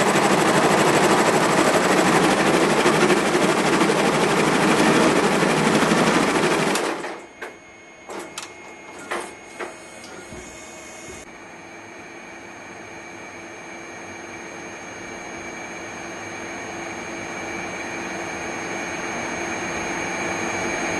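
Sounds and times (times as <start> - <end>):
rapid machine stitching noise: 0.0 - 7.2
steady mechanical hum: 0.0 - 20.9.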